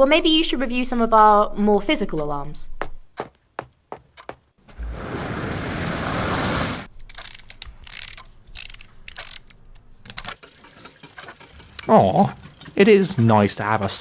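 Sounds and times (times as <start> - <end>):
mechanical ratcheting clicks: 7.0 - 13.6.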